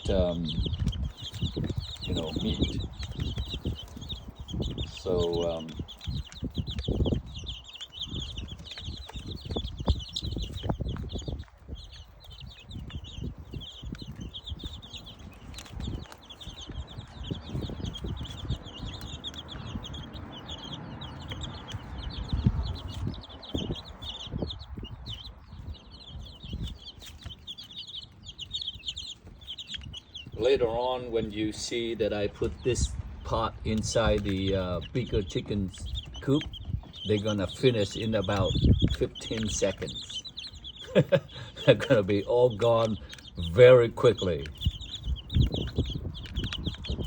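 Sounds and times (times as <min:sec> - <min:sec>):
chicks pecking knocks: 0:00.0 - 0:47.0
chicks peeping: 0:00.0 - 0:47.0.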